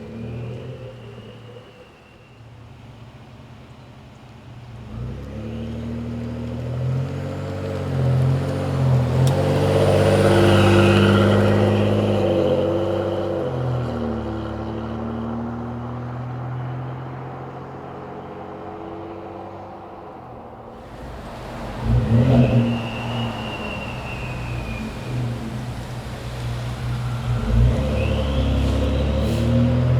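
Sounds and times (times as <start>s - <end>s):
high turbo whistle: 0.0s - 2.9s, 20.8s - 29.9s
suv exhaust driving past: 4.7s - 29.9s.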